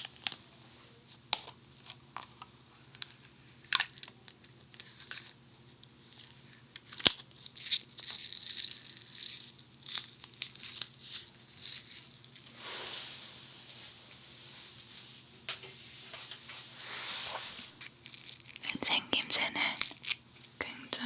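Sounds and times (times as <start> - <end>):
foam clay crackling and popping: 0.0 - 12.5, 17.7 - 18.8.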